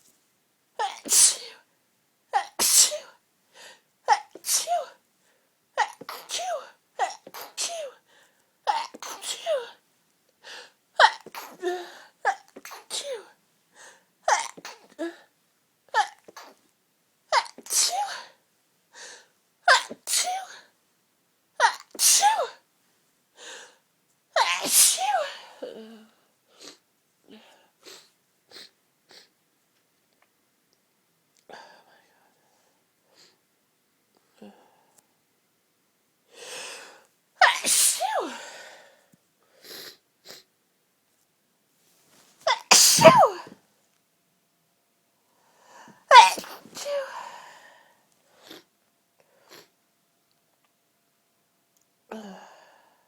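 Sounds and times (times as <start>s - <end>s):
woman sneezing: 0.8s - 1.6s, 2.4s - 3.2s, 4.1s - 5.0s, 21.6s - 22.6s, 24.4s - 25.5s, 37.4s - 38.5s, 42.5s - 43.6s, 46.1s - 47.2s
breath drawn in: 42.7s - 43.4s.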